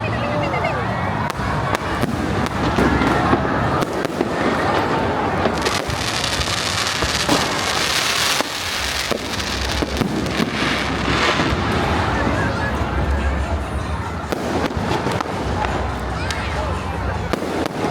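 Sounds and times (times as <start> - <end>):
firework hiss: 1.3 - 12.2
firework shells banging: 1.3 - 12.4.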